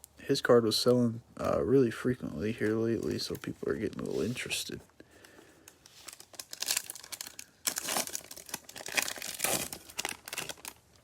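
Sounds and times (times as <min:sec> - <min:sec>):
foil wrapper tearing and crinkling: 0:05.8 - 0:11.0.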